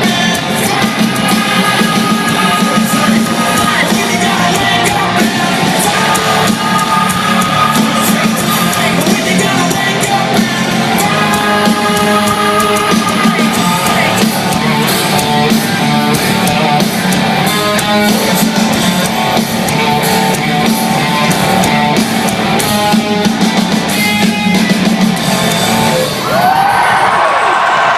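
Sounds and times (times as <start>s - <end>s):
bass guitar: 0.0s - 26.8s
drum kit: 0.0s - 26.9s
distorted electric guitars: 0.0s - 27.2s.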